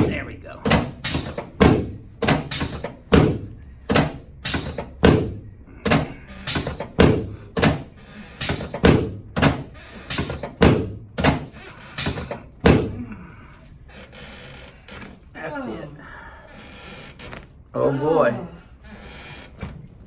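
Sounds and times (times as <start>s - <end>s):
adjusting device sharp thuds: 0.0s - 13.0s.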